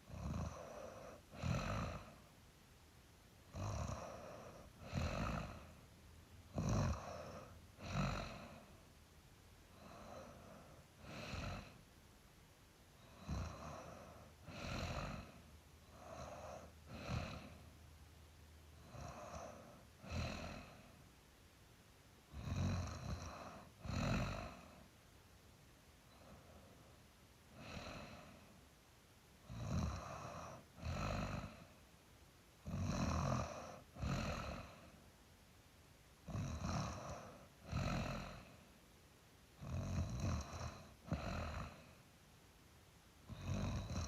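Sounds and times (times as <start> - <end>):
person snoring: 0.0 - 2.3, 3.5 - 5.8, 6.5 - 8.8, 9.7 - 11.8, 13.0 - 17.7, 18.8 - 21.0, 22.3 - 24.9, 26.1 - 28.5, 29.4 - 31.8, 32.6 - 35.0, 36.3 - 38.6, 39.6 - 42.0, 43.3 - 44.0.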